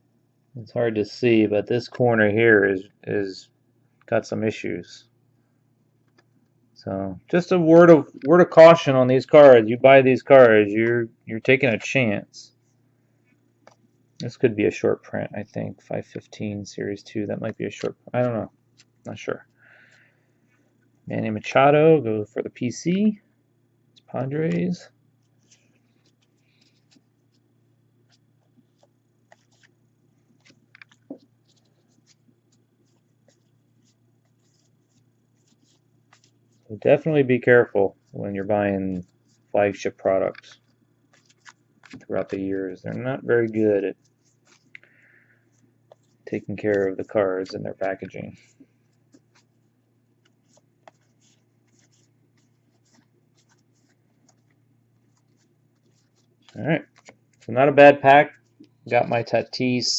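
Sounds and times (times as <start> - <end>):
low steady hum: 0.0 - 59.9
trading cards clicking and brushing: 15.4 - 20.6, 23.9 - 57.6.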